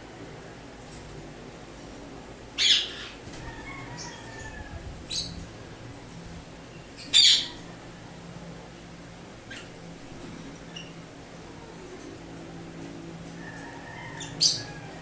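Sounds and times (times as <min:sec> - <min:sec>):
parrot squawking: 0:02.6 - 0:03.2, 0:07.0 - 0:07.6.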